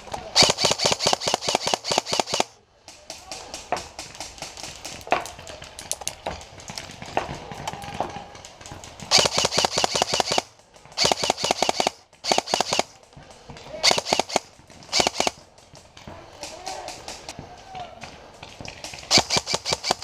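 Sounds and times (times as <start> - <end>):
faint scattered shots: 0.0 - 20.0
airsoft rifle full-auto bursts: 0.4 - 2.6, 9.1 - 13.0, 13.8 - 15.4, 19.1 - 20.0.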